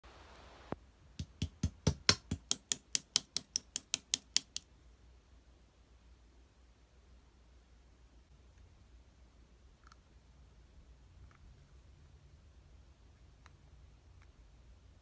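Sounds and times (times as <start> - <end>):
sharp clicks: 1.2 - 4.7.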